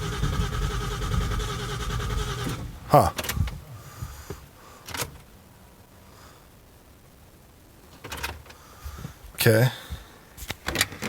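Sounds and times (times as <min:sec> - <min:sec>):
low background hiss: 0:00.0 - 0:11.0.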